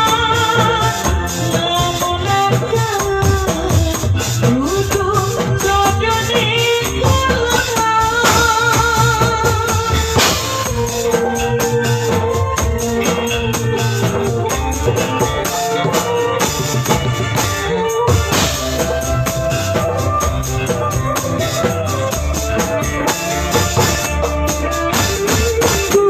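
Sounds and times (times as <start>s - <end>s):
drums: 0.0s - 26.0s
wavering melody line: 9.6s - 26.0s.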